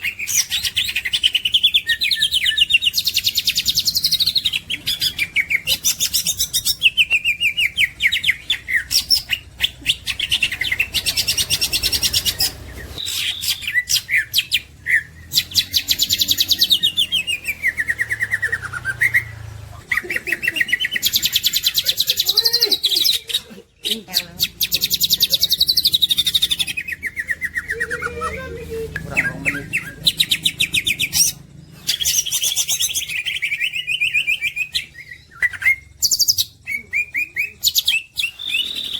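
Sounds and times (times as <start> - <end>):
bird singing trills: 0.0 - 38.9.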